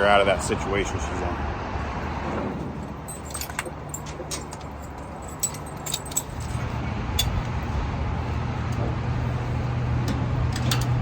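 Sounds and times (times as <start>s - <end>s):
metal clips jingling: 2.8s - 7.5s.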